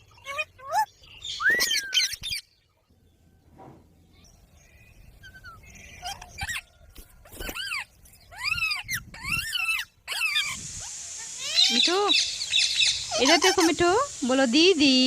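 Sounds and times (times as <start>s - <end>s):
parrot shrill calls: 0.1s - 2.4s, 7.4s - 14.3s.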